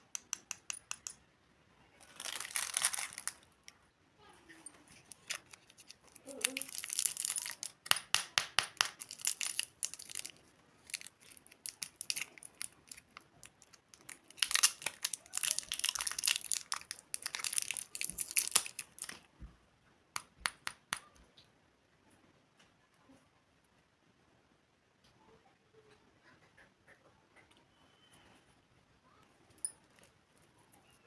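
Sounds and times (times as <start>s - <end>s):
plastic wrappers crinkling: 1.9s - 3.8s, 4.6s - 8.0s, 8.7s - 19.3s.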